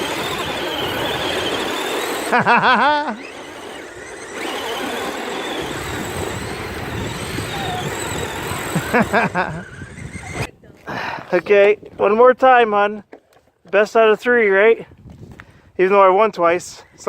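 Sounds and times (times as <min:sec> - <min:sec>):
electric motors whining: 0:00.0 - 0:10.5
wavering warbling squeal: 0:03.3 - 0:10.5.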